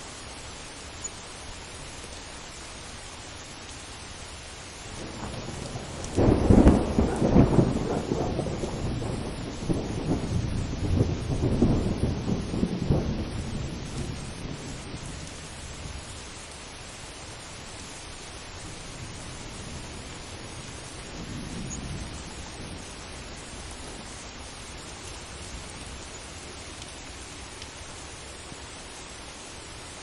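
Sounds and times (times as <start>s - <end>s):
steady rain: 0.0s - 30.0s
thunder rolling: 5.0s - 15.9s, 18.7s - 23.8s.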